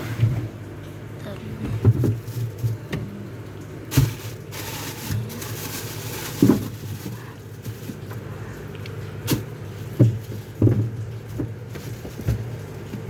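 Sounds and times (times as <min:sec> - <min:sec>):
low steady hum: 0:00.0 - 0:13.0
knocks and thumps: 0:01.6 - 0:03.1, 0:09.3 - 0:12.5.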